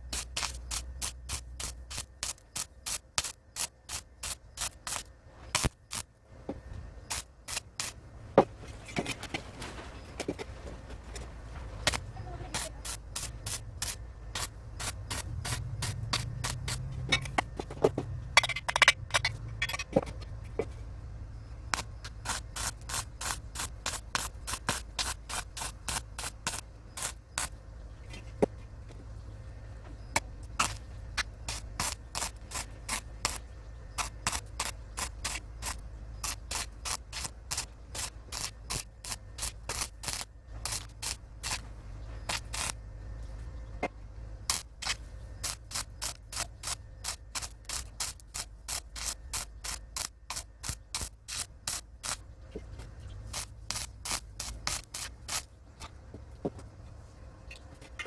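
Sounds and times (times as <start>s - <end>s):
electric arc welding crackle: 0.0s - 6.2s, 7.1s - 8.0s, 11.1s - 17.0s, 21.7s - 27.6s, 30.6s - 41.7s, 42.3s - 42.8s, 44.5s - 52.3s, 53.2s - 55.5s
steady low hum: 0.0s - 58.0s.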